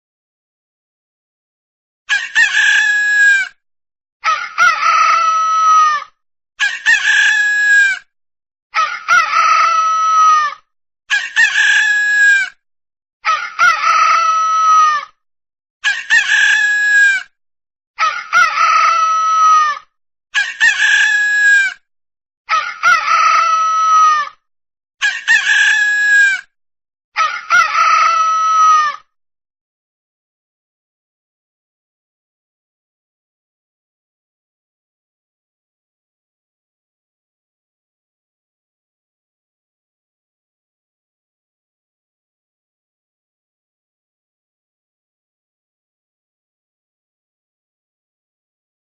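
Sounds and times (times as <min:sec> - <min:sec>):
rooster crowing: 0:02.1 - 0:03.5, 0:04.2 - 0:06.0, 0:25.0 - 0:26.4.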